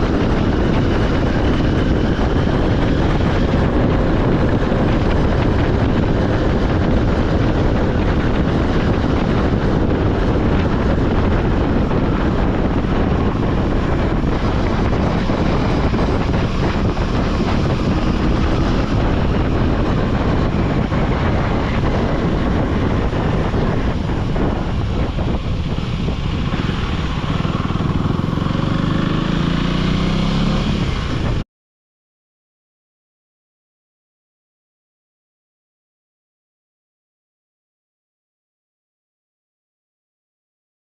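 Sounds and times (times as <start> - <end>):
motorcycle engine revving: 0.0 - 31.4.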